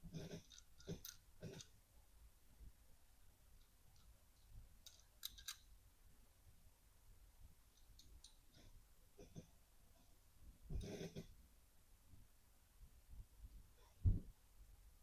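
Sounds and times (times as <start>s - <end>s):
small metal clicks: 0.4s - 1.8s, 3.6s - 5.7s, 7.7s - 8.6s.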